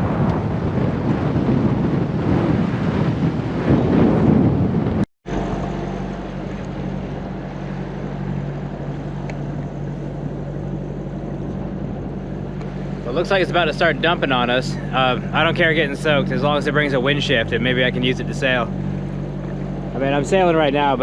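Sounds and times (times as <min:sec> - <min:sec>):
boat engine droning: 0:00.0 - 0:21.0
wind buffeting microphone: 0:00.0 - 0:21.0
rushing water: 0:04.7 - 0:21.0.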